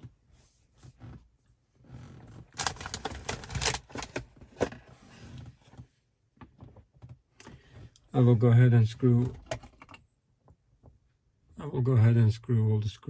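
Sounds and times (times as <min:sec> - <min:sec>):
rustling of wiring and plastic: 0:02.2 - 0:05.8.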